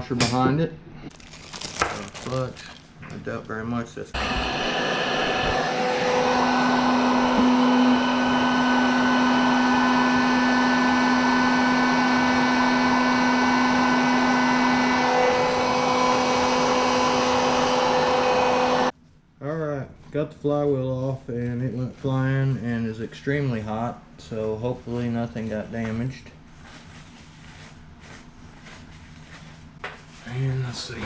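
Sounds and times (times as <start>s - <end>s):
heat gun blowing with motor whine: 4.2s - 18.9s.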